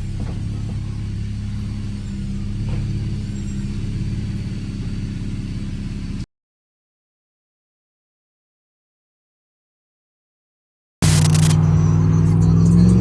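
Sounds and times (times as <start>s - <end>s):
car engine low hum: 0.0s - 6.3s, 11.0s - 13.0s
road noise: 0.0s - 6.3s, 11.0s - 13.0s.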